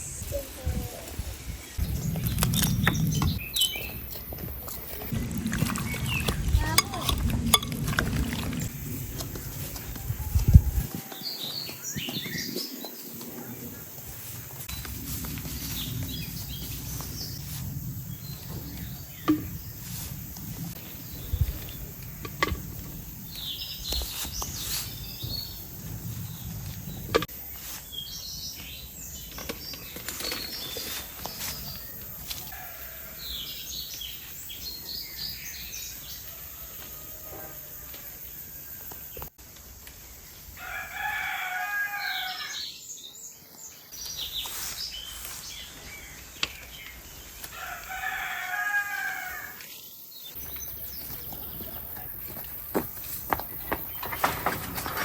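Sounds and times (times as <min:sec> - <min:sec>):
rooster crowing: 0:32.5 - 0:33.6, 0:36.2 - 0:39.0, 0:40.6 - 0:42.6, 0:47.5 - 0:49.6.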